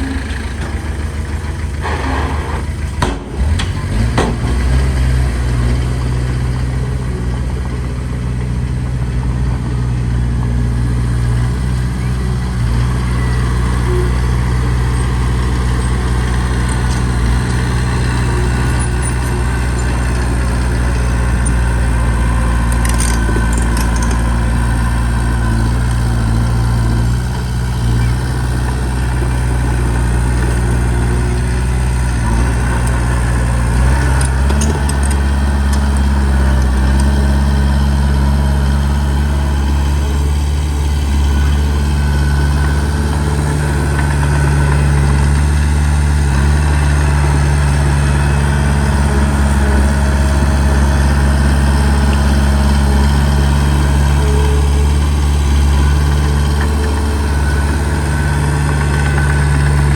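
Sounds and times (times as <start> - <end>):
heavy diesel engine droning: 0.0 - 59.9
sharp knocks: 3.0 - 5.2.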